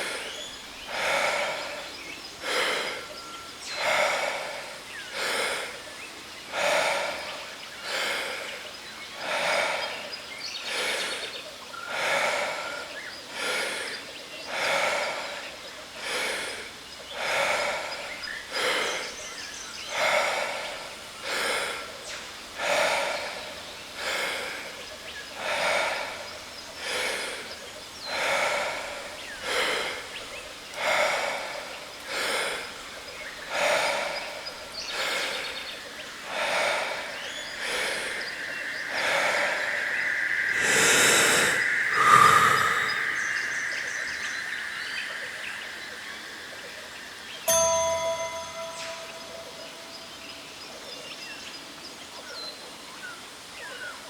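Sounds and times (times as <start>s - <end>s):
deep rapid breathing: 0.0s - 3.2s, 3.8s - 47.4s
sustained chime tone: 42.5s - 51.1s.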